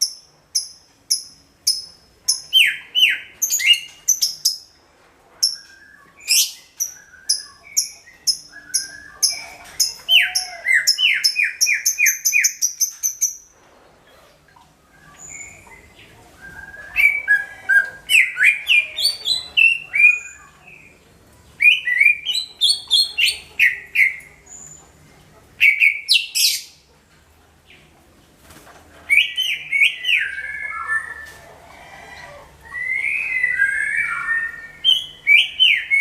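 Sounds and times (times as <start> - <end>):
bird singing: 5.4 - 13.5, 14.8 - 25.0, 29.1 - 31.4, 32.6 - 36.0.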